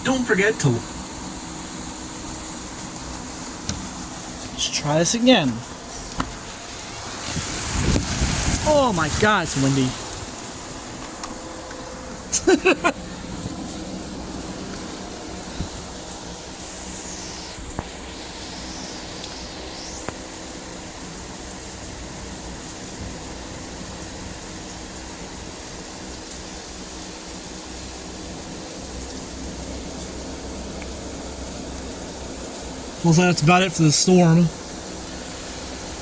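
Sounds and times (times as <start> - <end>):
wind rushing in a storm: 6.4 - 12.3, 12.9 - 17.0.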